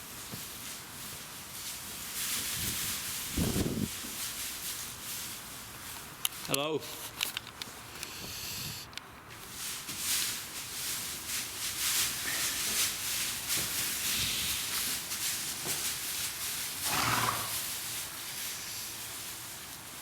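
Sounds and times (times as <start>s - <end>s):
horse rustling and moving: 0.0s - 7.9s, 9.1s - 20.0s
horse snorting: 16.8s - 17.7s.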